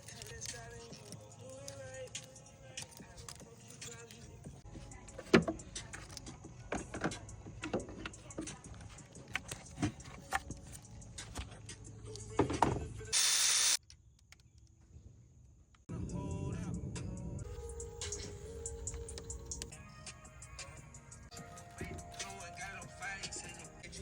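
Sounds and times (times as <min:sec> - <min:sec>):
tools clicking and knocking: 0:00.0 - 0:04.3, 0:05.2 - 0:12.8.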